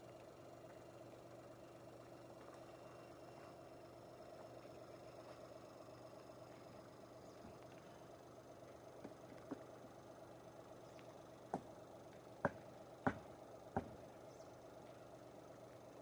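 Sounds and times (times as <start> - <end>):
faint steady hum: 0.0 - 16.0
sharp knocks: 12.5 - 14.0.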